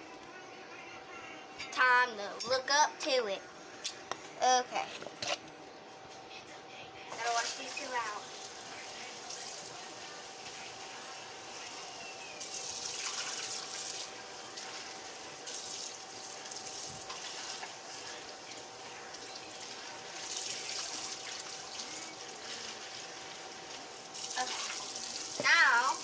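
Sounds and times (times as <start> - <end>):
water running from a tap: 7.1 - 26.0.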